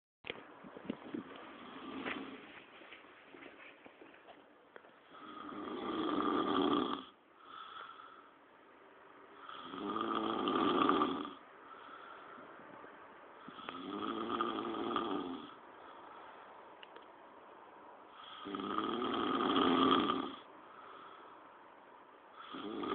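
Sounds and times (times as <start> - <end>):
person snoring heavily: 1.6 - 2.4, 5.1 - 8.2, 9.4 - 12.1, 13.4 - 15.6, 18.1 - 20.5, 22.4 - 22.9
soft out-breaths: 7.2 - 8.6, 11.4 - 13.8, 15.6 - 16.8, 20.5 - 22.6.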